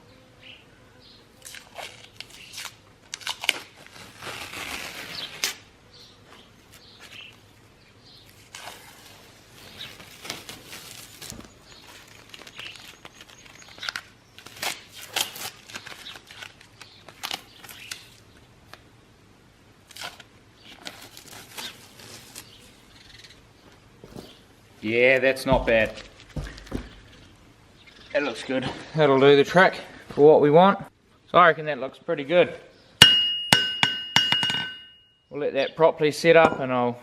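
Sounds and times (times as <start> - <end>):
tape ripping and crinkling: 1.4 - 5.7, 8.2 - 18.8, 19.8 - 22.8.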